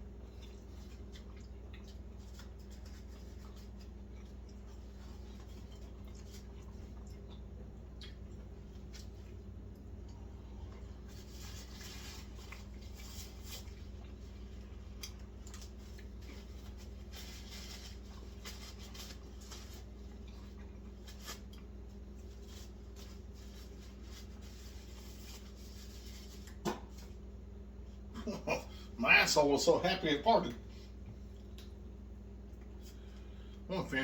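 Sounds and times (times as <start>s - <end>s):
chewing and lip-smacking: 0.0s - 11.2s, 12.2s - 17.0s, 19.1s - 22.1s, 31.1s - 32.8s
steady low hum: 0.0s - 34.0s.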